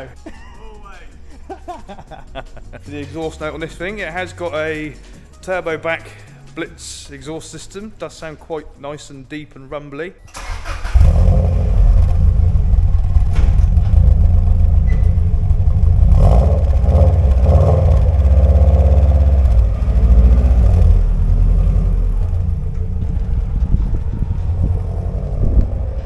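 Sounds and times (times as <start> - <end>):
car engine revving: 10.4 - 26.0.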